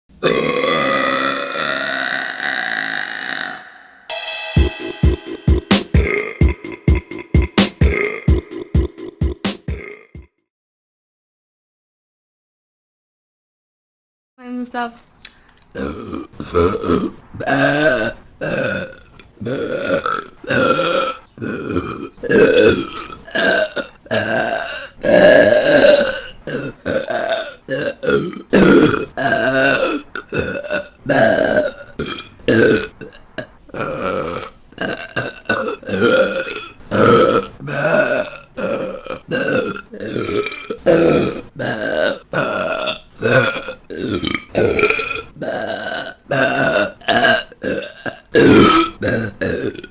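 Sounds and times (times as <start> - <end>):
woman burping: 0.2 - 3.9.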